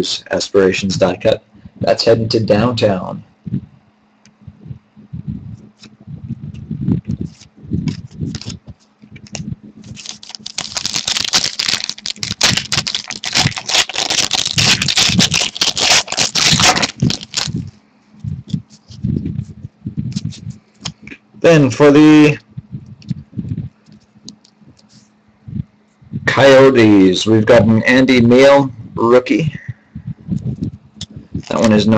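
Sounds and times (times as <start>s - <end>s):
foil wrapper tearing and crinkling: 7.3s - 8.6s, 9.2s - 17.7s.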